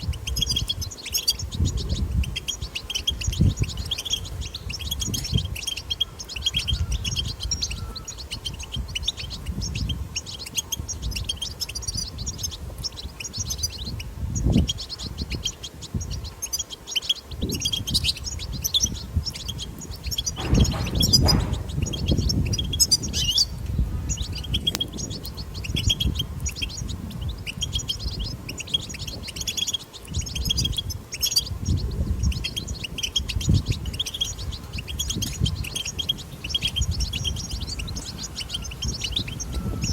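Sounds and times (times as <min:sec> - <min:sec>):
goldfinches twittering: 0:00.0 - 0:39.9
low rumble: 0:20.4 - 0:24.4.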